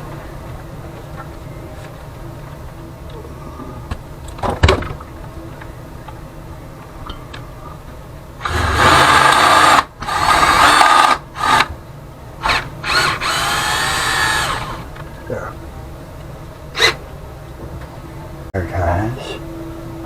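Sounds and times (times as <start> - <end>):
power drill drilling: 8.4 - 11.7, 12.4 - 14.9, 16.8 - 17.0.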